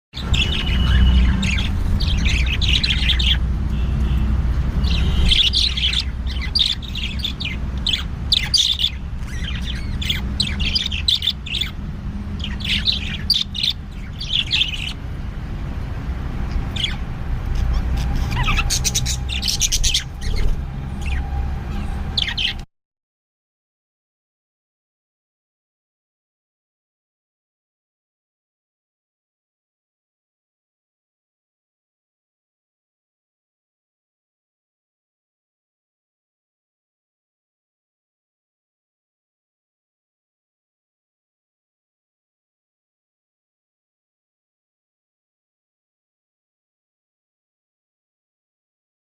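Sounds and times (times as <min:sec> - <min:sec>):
budgies chirping: 0:00.2 - 0:15.1, 0:16.4 - 0:22.7.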